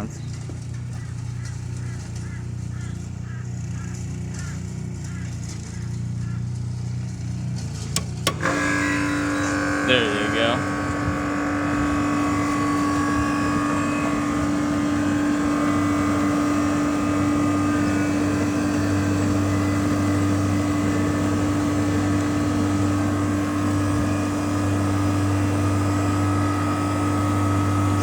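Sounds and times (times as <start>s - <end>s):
air conditioner humming: 8.0s - 28.0s
person talking: 9.4s - 10.7s.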